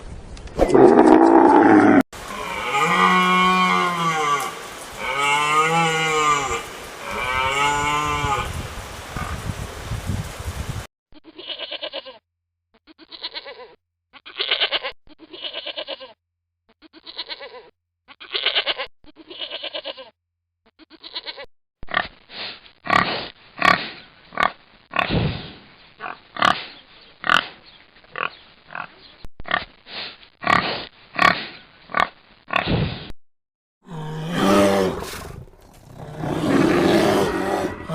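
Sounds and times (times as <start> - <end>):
pig grunting: 0.6 - 8.1, 33.9 - 37.9.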